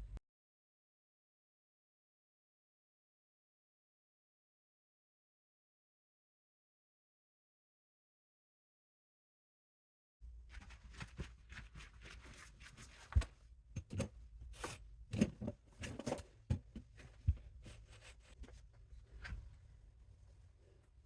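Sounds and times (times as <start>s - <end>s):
rustling: 10.4s - 13.4s.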